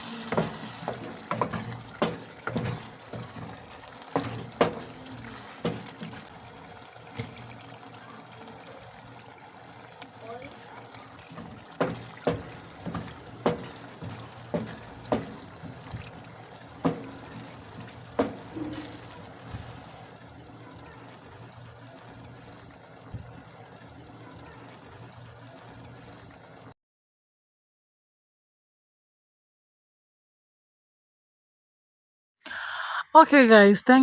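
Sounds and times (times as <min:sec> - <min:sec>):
liquid sounds: 0:00.0 - 0:26.7.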